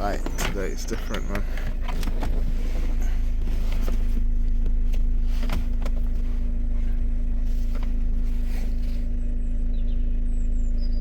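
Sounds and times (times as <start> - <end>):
motor vehicle rumble: 0.0 - 11.0.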